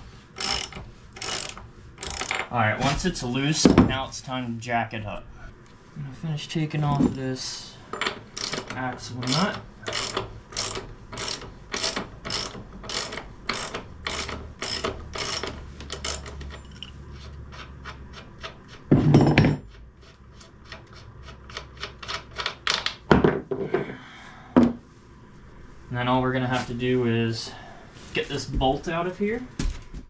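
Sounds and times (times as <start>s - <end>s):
ratchet wrench clicking: 0.4s - 2.4s, 8.4s - 16.9s.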